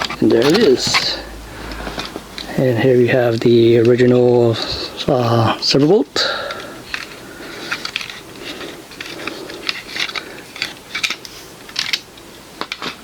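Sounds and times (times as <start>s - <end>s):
plastic parts clicking and rattling: 0.0s - 13.0s.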